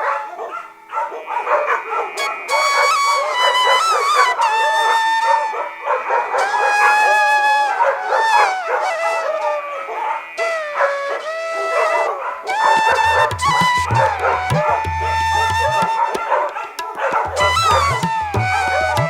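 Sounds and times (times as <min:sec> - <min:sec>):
dog yipping and howling: 0:00.0 - 0:19.0.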